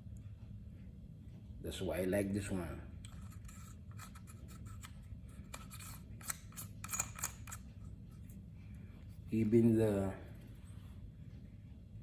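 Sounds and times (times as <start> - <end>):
rifle handling clicks and scrapes: 3.0 - 8.4.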